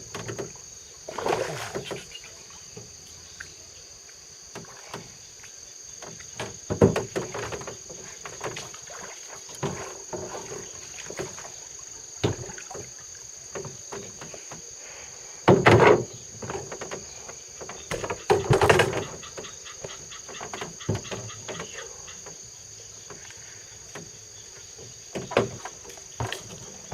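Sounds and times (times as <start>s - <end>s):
knocks and clunks: 0.0s - 0.6s, 6.0s - 8.8s, 9.5s - 11.5s, 12.2s - 12.9s, 13.5s - 14.7s, 15.4s - 22.4s, 23.9s - 26.9s
insects droning: 0.0s - 26.9s.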